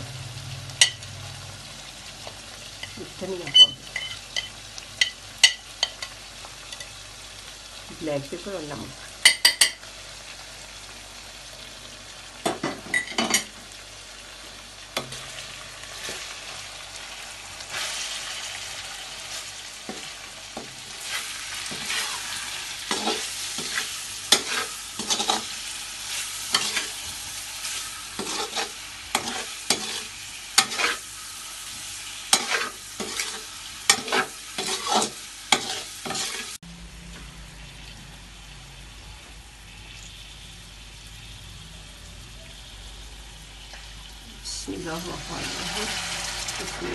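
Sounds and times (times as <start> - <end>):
food sizzling in a pan: 0.0 - 46.9
spoon scraping a pan: 2.8 - 7.0, 12.5 - 13.6, 17.7 - 36.6.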